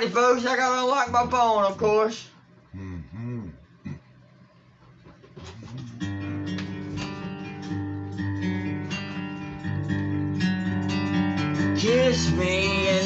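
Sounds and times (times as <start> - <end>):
acoustic guitar strumming chords: 5.3 - 13.0.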